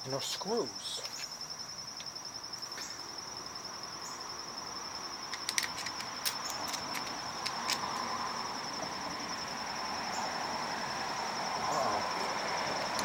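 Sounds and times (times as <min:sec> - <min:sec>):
insects trilling: 0:00.0 - 0:13.0
small sharp clicks of parts: 0:05.3 - 0:08.1.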